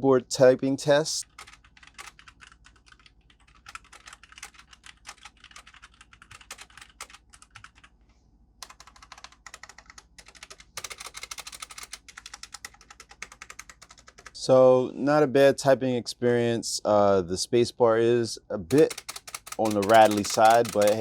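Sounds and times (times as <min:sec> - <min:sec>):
fast typing on mechanical keyboard: 0:01.2 - 0:08.0, 0:08.6 - 0:14.4, 0:18.7 - 0:21.0.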